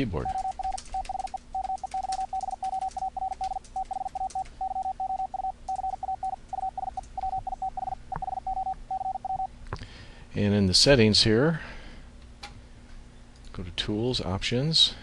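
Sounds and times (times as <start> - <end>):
morse code tone: 0.2 - 9.5.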